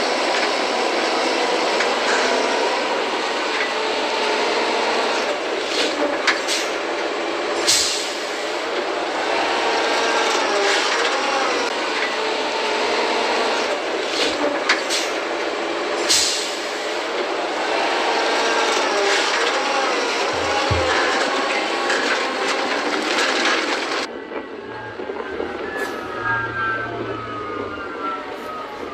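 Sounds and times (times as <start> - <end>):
harvesting machinery running: 0.0 - 28.9
sharp knocks: 20.4 - 21.3
wavering machine whine: 24.1 - 28.9.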